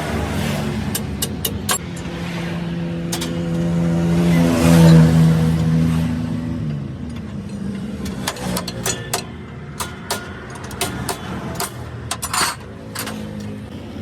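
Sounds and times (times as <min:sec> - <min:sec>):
vehicle engine passing: 0:00.0 - 0:14.0
sharp metallic clicks: 0:00.7 - 0:02.2, 0:03.1 - 0:03.7, 0:06.6 - 0:13.7.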